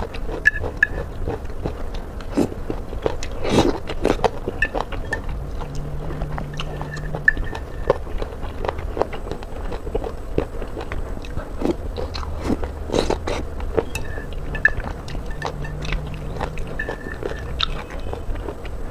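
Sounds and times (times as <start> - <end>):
low hum: 0.0 - 18.9
person chewing: 0.0 - 18.9.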